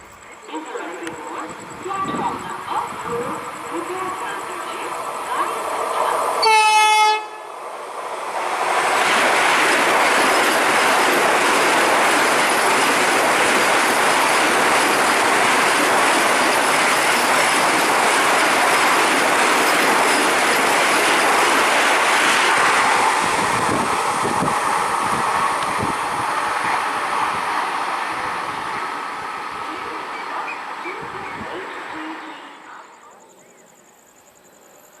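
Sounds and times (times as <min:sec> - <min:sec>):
train rushing past on track: 0:00.0 - 0:33.0
train horn blast: 0:06.4 - 0:07.5.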